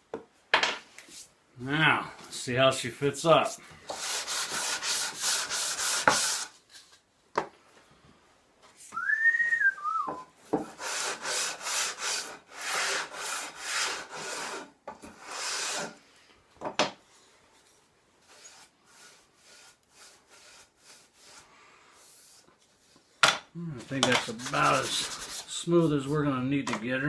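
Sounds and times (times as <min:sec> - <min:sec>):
sanding wood by hand: 0:04.0 - 0:06.5, 0:10.6 - 0:16.0, 0:18.2 - 0:22.4, 0:24.2 - 0:26.2.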